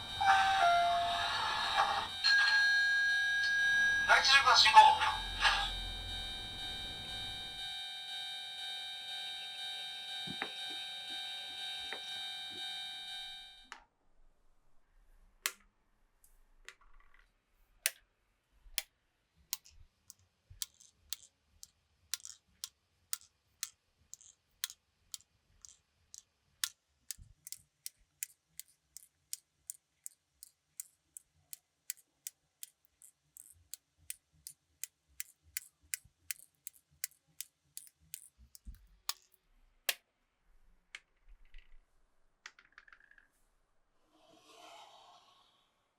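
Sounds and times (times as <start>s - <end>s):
faint low hum: 0.0s - 7.7s
steady ringing tone: 0.0s - 13.6s
marbles clicking on wooden run: 20.6s - 39.4s, 42.4s - 43.3s.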